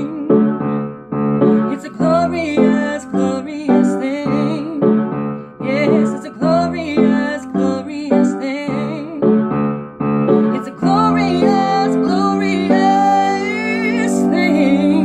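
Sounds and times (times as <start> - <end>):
piano playing chords: 0.0 - 15.0.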